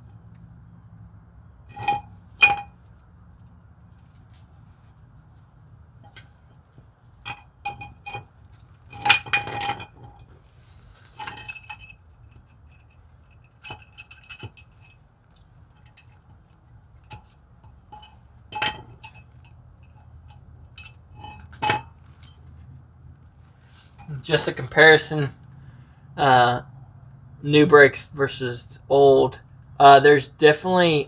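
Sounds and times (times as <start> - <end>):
metal parts clinking: 1.7 - 2.7, 7.3 - 8.2, 8.9 - 10.3, 11.0 - 15.0, 17.9 - 22.5.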